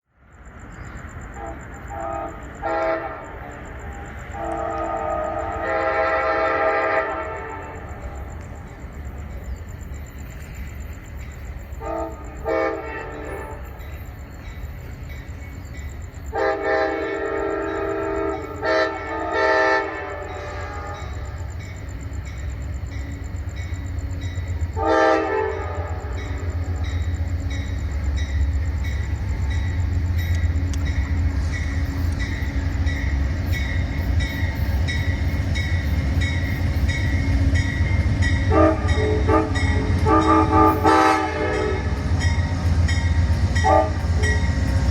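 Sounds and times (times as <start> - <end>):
low locomotive rumble: 0.0 - 44.9
train air horn blasts: 1.4 - 8.2, 11.8 - 13.8, 16.3 - 21.4, 24.7 - 27.8, 29.6 - 44.9.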